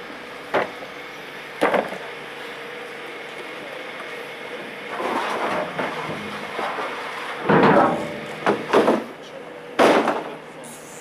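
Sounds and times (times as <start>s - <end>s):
steady background noise: 0.0s - 11.0s.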